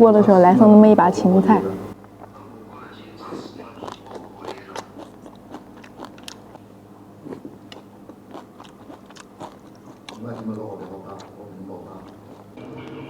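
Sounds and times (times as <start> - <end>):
person chewing crisp food: 3.2 - 12.6.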